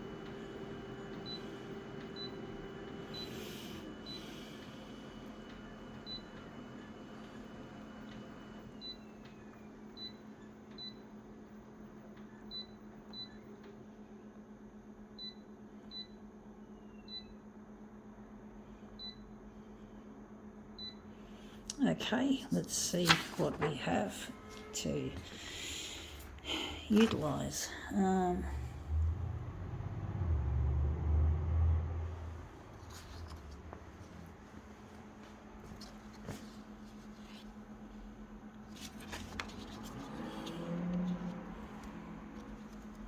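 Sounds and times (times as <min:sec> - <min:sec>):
photocopier humming: 0:00.0 - 0:10.6, 0:21.0 - 0:43.0.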